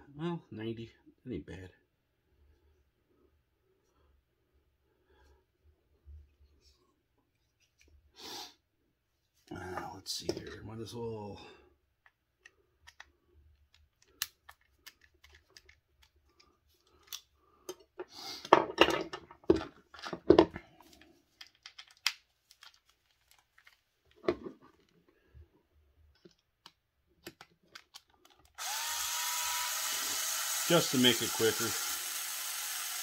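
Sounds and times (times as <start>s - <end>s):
small parts clicking: 12.0s - 17.8s, 21.4s - 23.8s, 26.1s - 28.7s.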